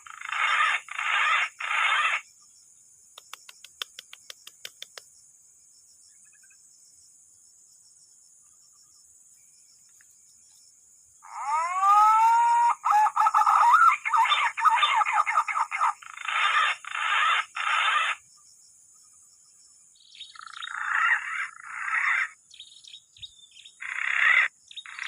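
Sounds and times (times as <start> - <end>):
insects droning: 0.0 - 25.0
quick clicks: 3.1 - 5.1
loud rising animal call: 11.2 - 13.9.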